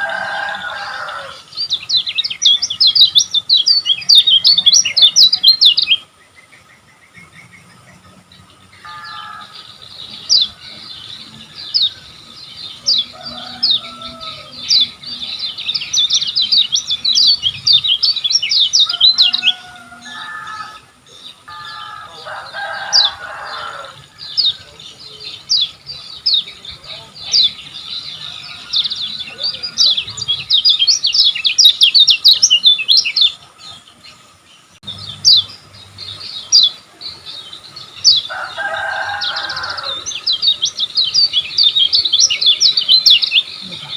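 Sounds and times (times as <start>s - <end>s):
harsh chattering bird call: 0.0s - 34.1s.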